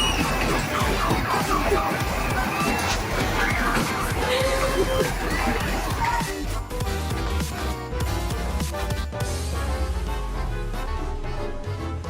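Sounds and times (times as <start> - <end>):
background music with bass: 0.0 - 12.0.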